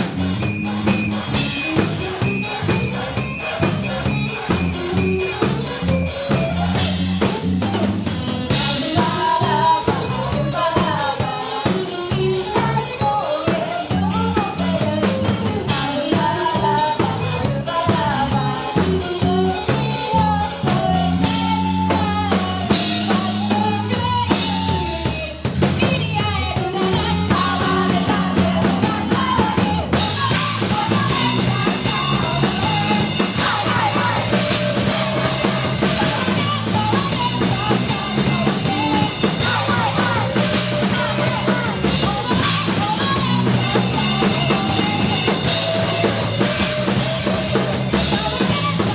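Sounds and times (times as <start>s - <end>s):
band music: 0.0s - 48.9s
bass line: 0.0s - 48.9s
drum kit: 0.0s - 48.9s.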